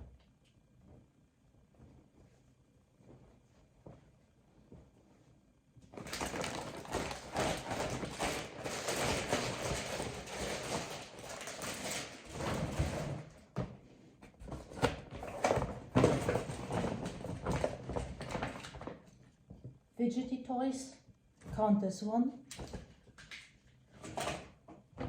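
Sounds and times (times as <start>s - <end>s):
packaging rustling and crinkling: 6.0s - 13.2s.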